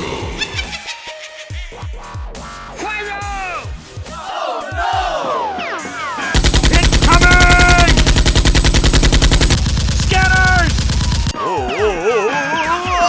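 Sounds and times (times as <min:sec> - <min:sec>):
automatic machine-gun fire: 0:06.4 - 0:11.4.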